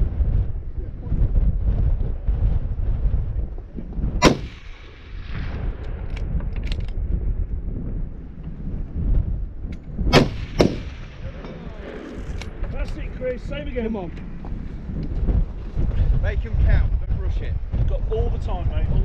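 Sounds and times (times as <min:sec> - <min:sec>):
wind rumbling on microphone: 0:00.0 - 0:19.0
rifle shots: 0:04.2 - 0:06.8, 0:10.1 - 0:12.7.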